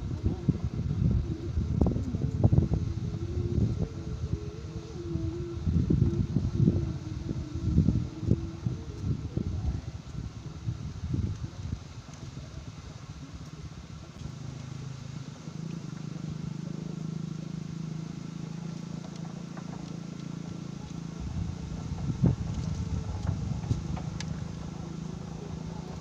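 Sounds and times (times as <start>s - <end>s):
engine running: 0.0s - 26.0s.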